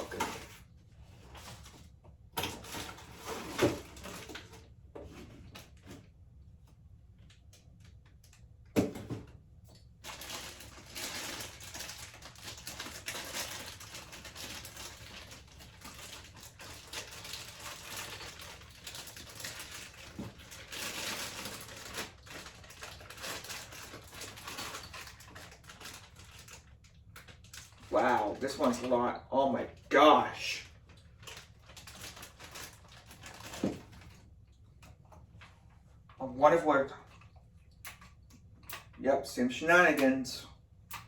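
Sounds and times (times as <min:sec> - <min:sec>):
packaging rustling and crinkling: 0:00.0 - 0:06.0, 0:10.0 - 0:28.9, 0:30.6 - 0:34.2.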